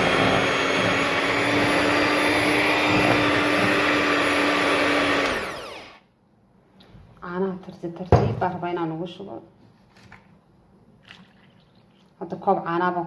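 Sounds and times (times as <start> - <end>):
electric blender motor running: 0.0 - 6.0.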